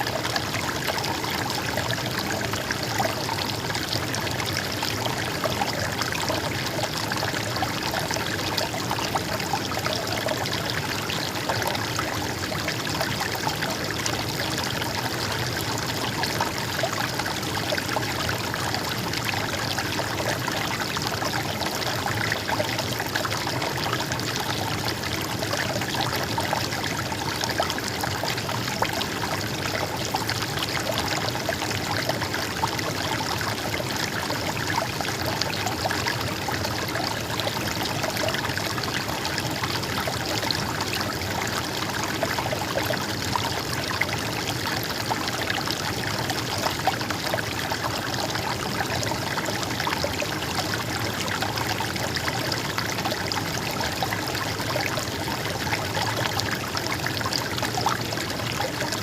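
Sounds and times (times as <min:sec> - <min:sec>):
stream babbling over stones: 0:00.0 - 0:59.0.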